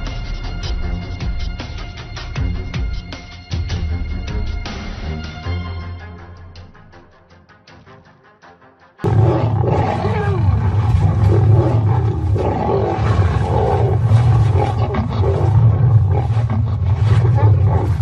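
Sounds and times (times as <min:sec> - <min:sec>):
lions roaring and snarling: 0:09.1 - 0:18.0.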